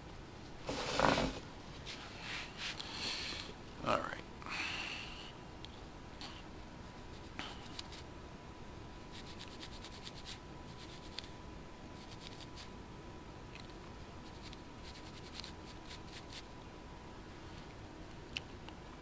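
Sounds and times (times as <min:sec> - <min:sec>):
faint steady hum: 0:00.0 - 0:19.0
faint rubbing: 0:00.6 - 0:02.8.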